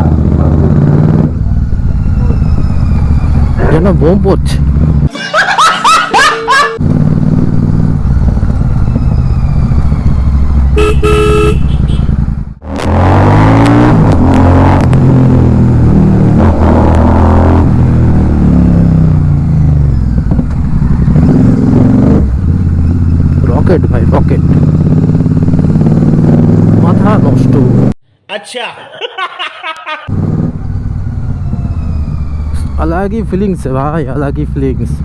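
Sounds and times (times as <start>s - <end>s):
motorcycle engine running: 0.0s - 5.1s, 6.8s - 12.7s, 17.4s - 27.9s
vehicle horn honking: 10.7s - 12.2s.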